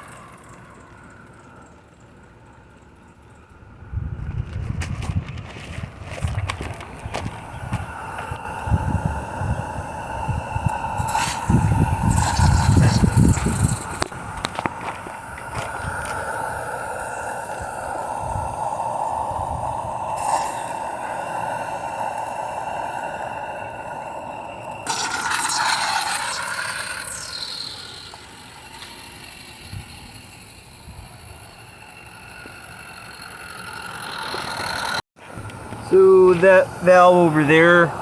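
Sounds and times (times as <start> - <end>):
steam locomotive hissing: 7.3 - 38.0
loud steam hiss: 7.4 - 28.8, 34.1 - 38.0.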